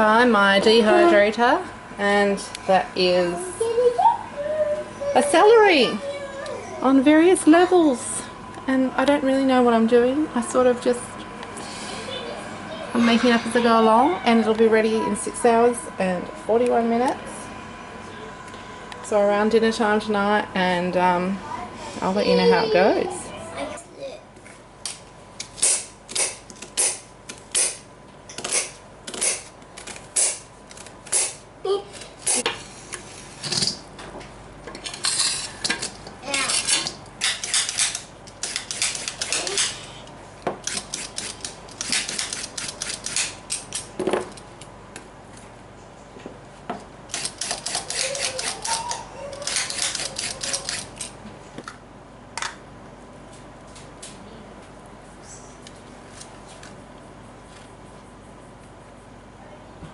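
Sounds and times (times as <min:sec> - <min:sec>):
utensils and dishes clinking: 0:34.8 - 0:39.8, 0:47.1 - 0:51.2.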